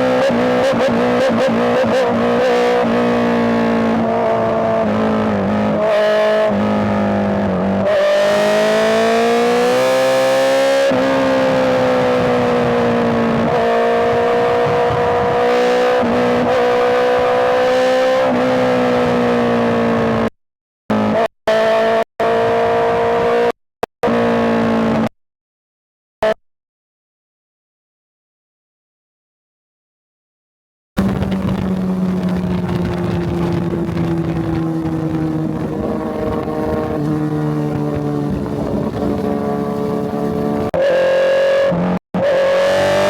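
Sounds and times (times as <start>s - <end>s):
motorcycle engine revving high: 0.0s - 20.3s, 31.0s - 43.0s.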